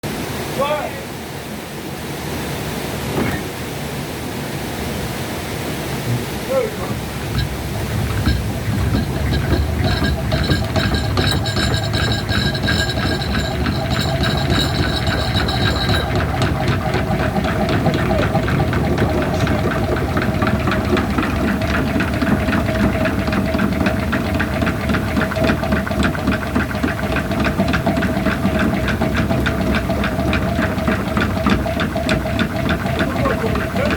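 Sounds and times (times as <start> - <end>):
constant hum: 5.6 - 33.9
high whine: 6.0 - 23.8
gear teeth clattering: 6.9 - 33.9.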